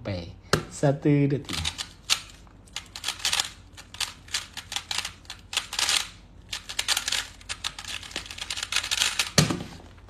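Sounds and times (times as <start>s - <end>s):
puzzle cube clicking: 1.5s - 9.4s.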